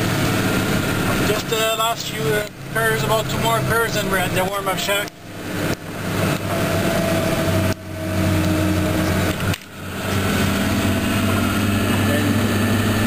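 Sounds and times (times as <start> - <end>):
snow groomer engine running: 0.0 - 13.0.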